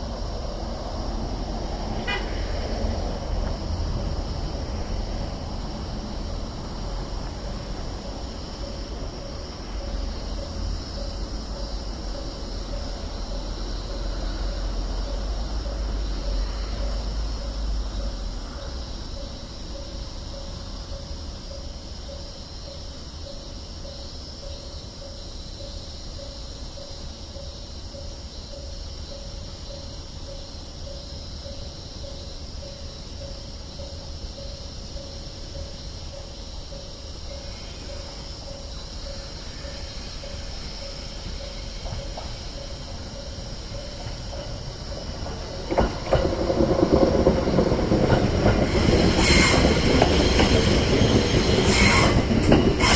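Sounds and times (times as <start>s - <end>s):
train rumbling: 0.0s - 52.9s
level crossing warning bell: 32.7s - 45.6s.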